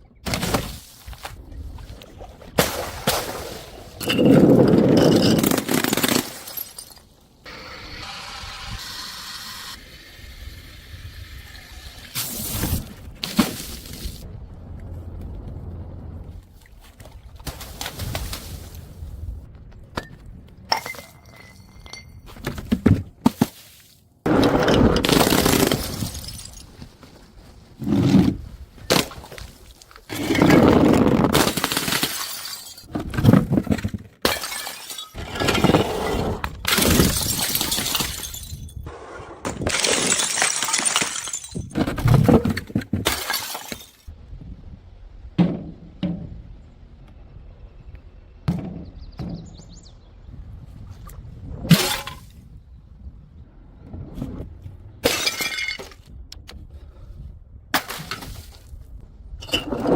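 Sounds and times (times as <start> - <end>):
glass bottles smashing: 4.0 - 7.1, 24.5 - 26.8, 31.4 - 32.9, 34.2 - 35.8, 36.7 - 38.9, 39.6 - 44.1, 55.0 - 56.0.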